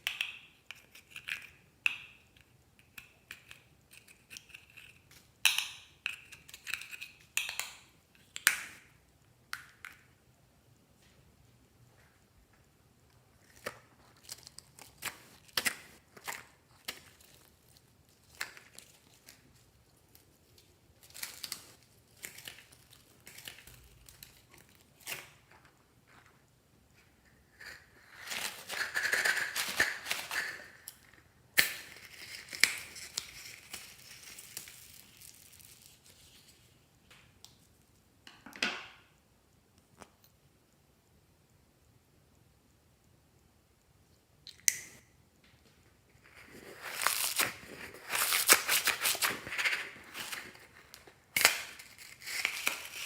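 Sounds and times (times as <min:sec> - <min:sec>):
slime crinkling and tearing: 0:46.2 - 0:53.0.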